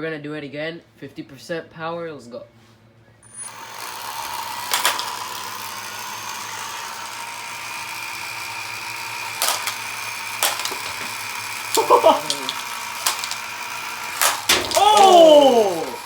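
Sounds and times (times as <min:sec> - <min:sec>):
robot spinning weapon whirring: 0:03.3 - 0:16.0.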